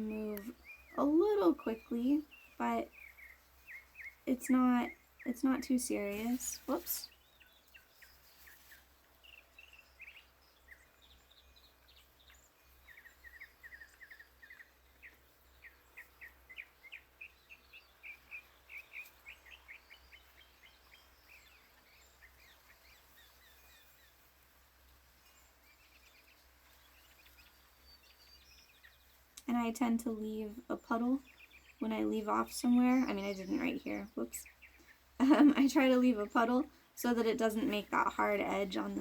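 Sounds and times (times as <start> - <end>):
songbird chirping: 0.0 - 39.0.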